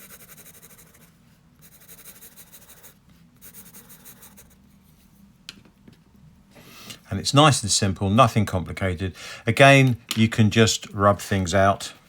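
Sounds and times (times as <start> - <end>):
pencil scratching on paper: 0.0 - 4.6.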